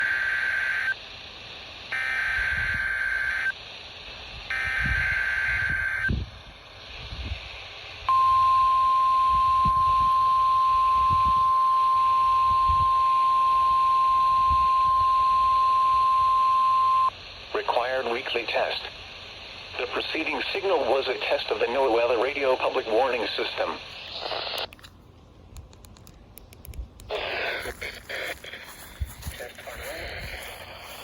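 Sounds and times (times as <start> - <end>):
radio hiss: 0.0 - 24.7, 27.0 - 31.0
single-pitch warning alarm tone: 1.9 - 3.5, 4.5 - 6.2, 8.1 - 17.1
buzzy data bursts: 27.1 - 31.0.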